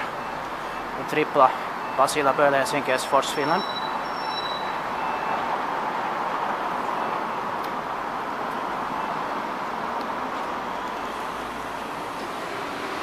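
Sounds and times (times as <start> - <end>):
road traffic hiss and hum: 0.0 - 13.0.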